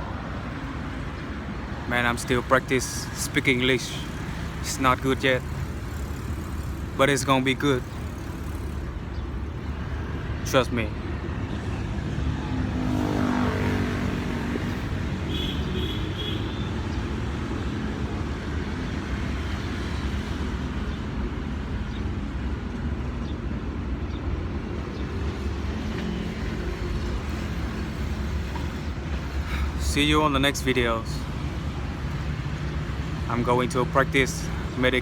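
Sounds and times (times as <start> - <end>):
road traffic rumble: 0.0 - 35.0
vehicle passing: 11.8 - 15.3.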